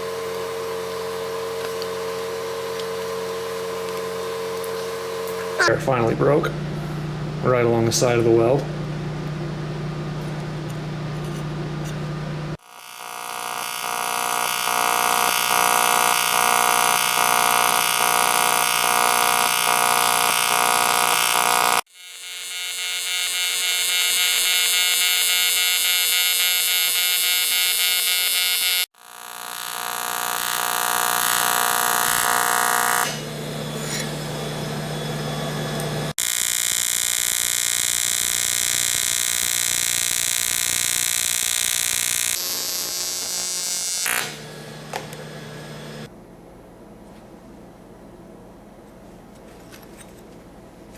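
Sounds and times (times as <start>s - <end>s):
welding arc buzzing: 0.0s - 46.1s.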